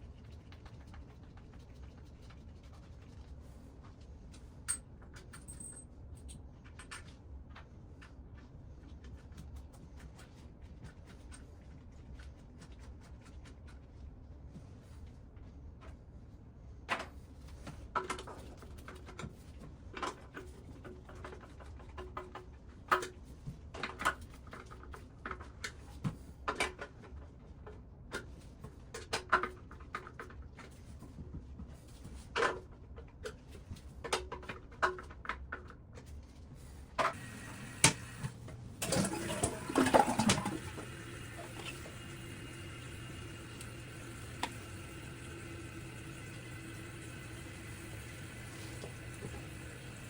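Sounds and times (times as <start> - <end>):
low steady hum: 36.2 - 50.0.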